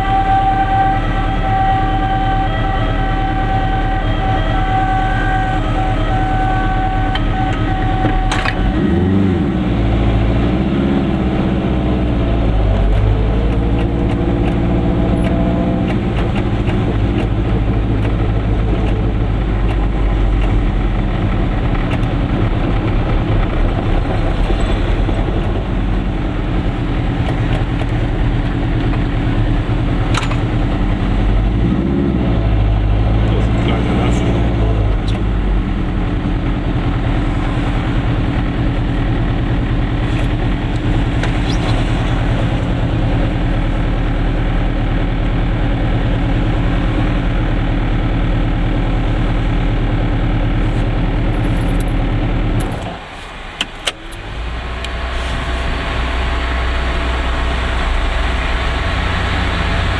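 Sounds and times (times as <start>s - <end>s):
steady high horn tone: 0.0s - 26.0s, 52.9s - 59.9s
two-stroke car engine: 0.0s - 59.9s.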